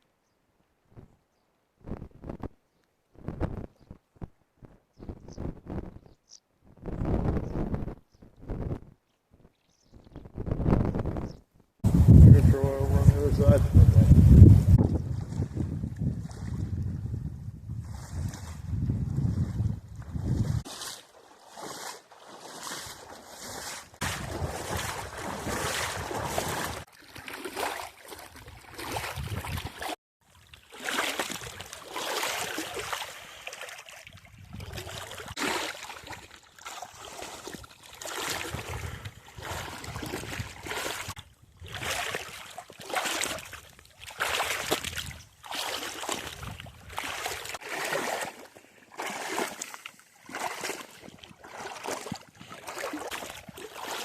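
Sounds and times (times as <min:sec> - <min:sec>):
water sloshing around wading legs: 0:16.2 - 0:16.8, 0:19.4 - 0:54.0.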